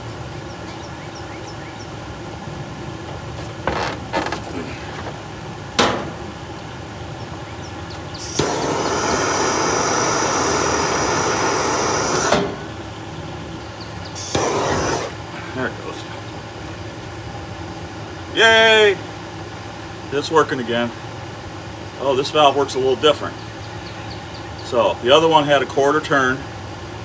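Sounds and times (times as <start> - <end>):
gas hissing: 2.6 - 24.0
igniter clicks: 3.0 - 15.8.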